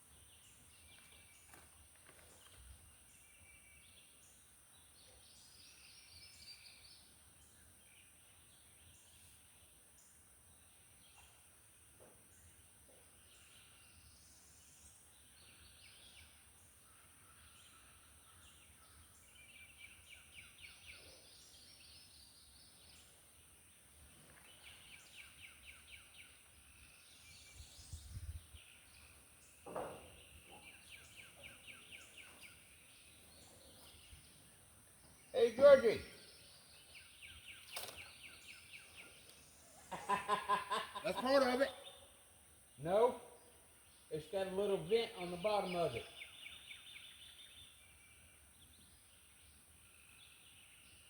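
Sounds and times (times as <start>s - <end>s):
faint bird song: 0.0s - 51.0s.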